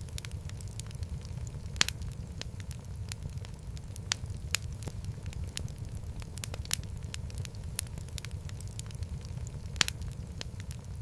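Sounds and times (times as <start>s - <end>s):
low rumble of flames: 0.0s - 11.0s
wood fire crackling and popping: 0.0s - 11.0s.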